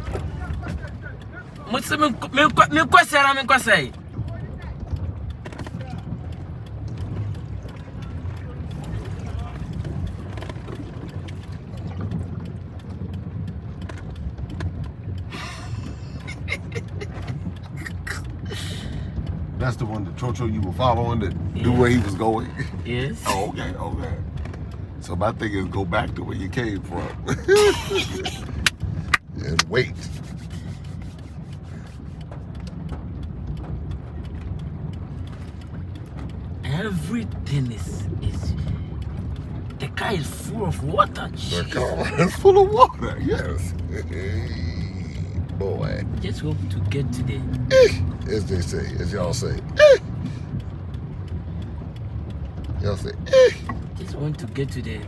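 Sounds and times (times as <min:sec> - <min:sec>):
car engine running: 0:00.0 - 0:55.0
water rushing: 0:00.0 - 0:55.0
faint clicks: 0:03.9 - 0:22.8, 0:28.2 - 0:36.6, 0:47.5 - 0:55.0.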